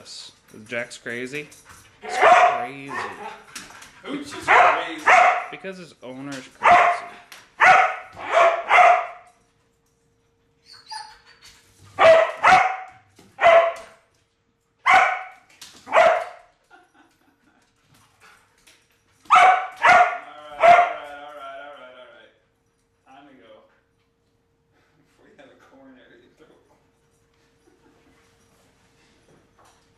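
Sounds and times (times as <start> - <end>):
dog barking: 2.0 - 3.4, 4.4 - 5.5, 6.6 - 9.3, 12.0 - 14.0, 14.8 - 16.5, 19.3 - 21.1.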